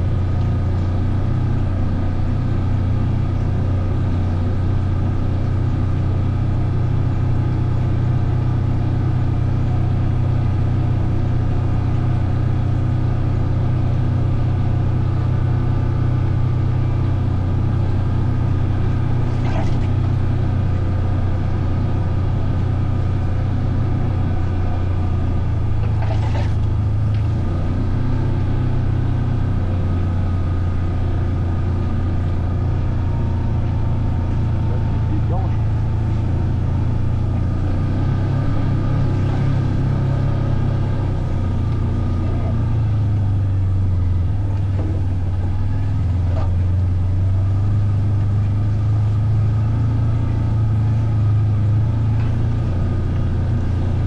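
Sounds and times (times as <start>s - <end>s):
vehicle engine humming: 0.0s - 54.0s.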